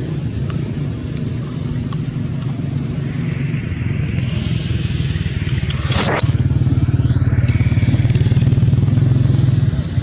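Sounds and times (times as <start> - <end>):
motor engine running: 0.0 - 10.0
brief hiss: 3.0 - 8.5.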